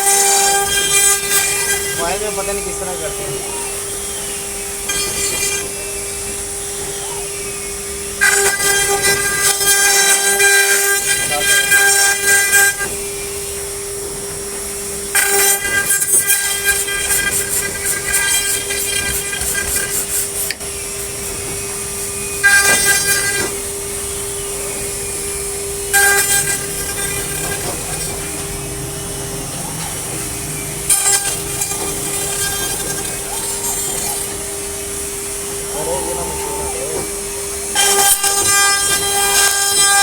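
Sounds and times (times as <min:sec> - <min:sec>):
cutting tool hiss and ringing tones: 0:00.0 - 0:13.5
cnc machine whine: 0:00.0 - 0:40.0.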